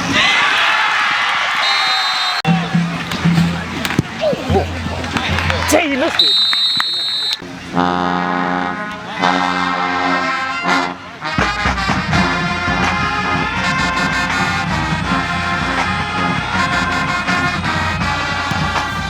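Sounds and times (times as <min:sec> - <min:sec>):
heavy bass beat: 0:02.5 - 0:05.8
brass horns holding long notes: 0:07.7 - 0:19.0.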